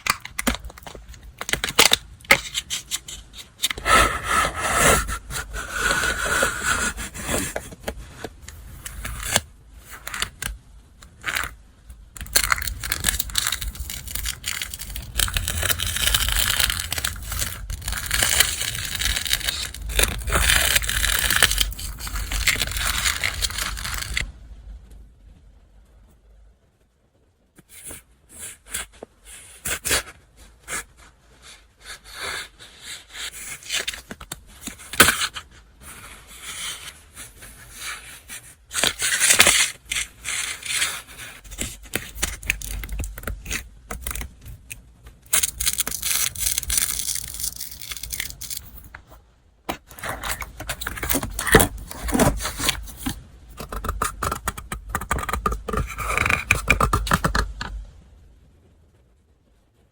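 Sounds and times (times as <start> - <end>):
paper rustling and crinkling: 0.0 - 3.8, 12.2 - 24.3, 32.7 - 57.7.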